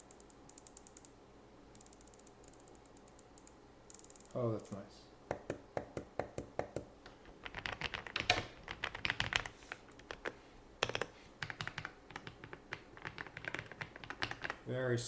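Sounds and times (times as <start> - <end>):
mechanical keyboard typing: 7.4 - 14.6.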